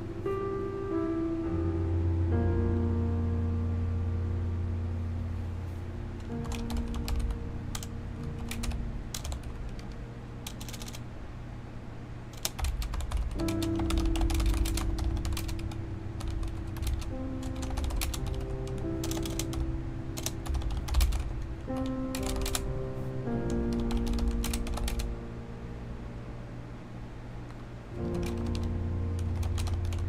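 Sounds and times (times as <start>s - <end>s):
background music with held notes: 0.0s - 11.1s, 12.4s - 26.5s, 27.9s - 30.0s
mechanical keyboard keys clacking: 6.2s - 11.0s, 12.3s - 22.7s, 23.4s - 25.1s, 28.0s - 30.0s.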